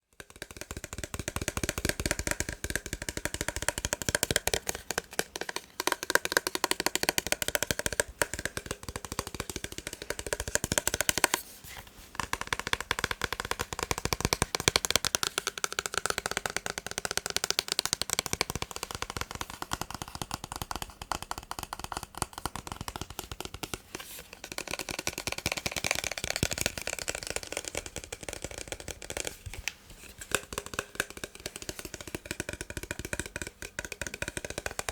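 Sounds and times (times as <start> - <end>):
massage gun tapping: 0.0 - 11.4, 12.1 - 34.9.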